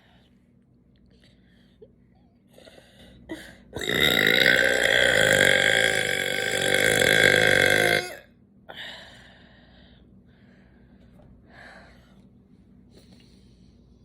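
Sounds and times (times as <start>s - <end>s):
person burping: 3.8s - 8.2s.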